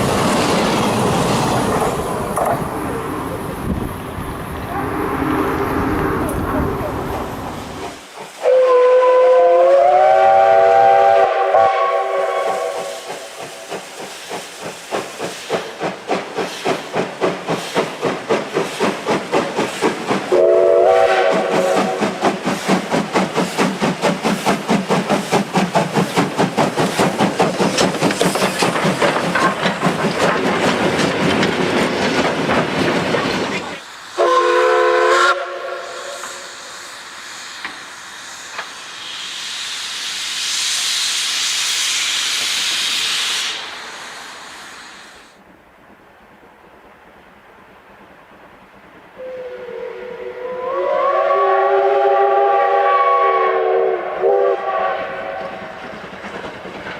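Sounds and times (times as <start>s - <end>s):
steam locomotive chuffing: 0.0s - 45.4s, 49.2s - 56.9s
steam whistle blasts: 8.4s - 13.4s, 20.3s - 22.2s, 34.2s - 36.7s, 49.2s - 55.7s.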